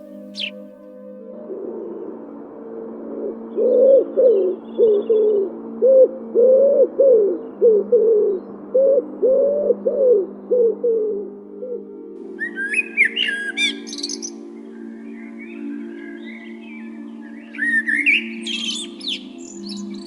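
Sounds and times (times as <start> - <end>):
dove cooing: 3.0 - 14.3.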